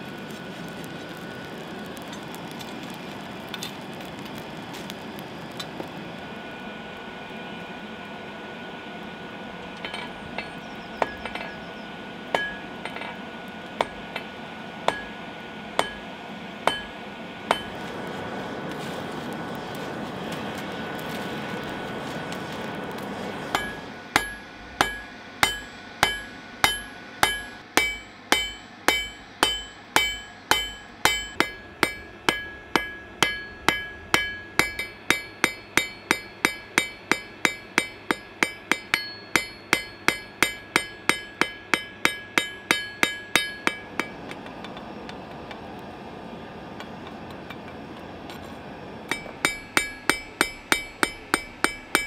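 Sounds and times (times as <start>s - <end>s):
hammer striking metal on anvil: 9.8s - 11.6s, 12.3s - 13.2s, 13.8s - 15.2s, 15.8s - 17.8s, 23.5s - 44.4s, 49.1s - 52.0s
steady rushing noise: 15.7s - 44.4s.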